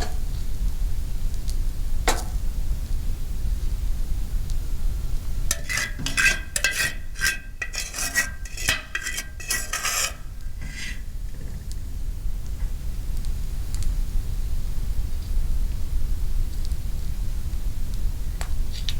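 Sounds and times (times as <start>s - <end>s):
metal utensil scraping a pan: 5.5s - 11.6s.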